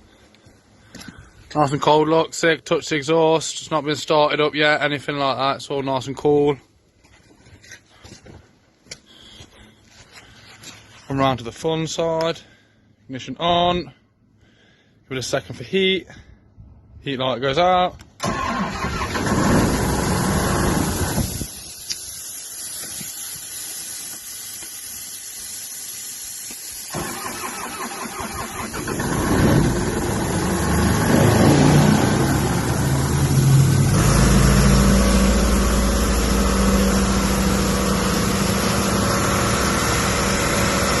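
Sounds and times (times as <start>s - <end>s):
diesel engine starting and running: 18.1s - 41.0s.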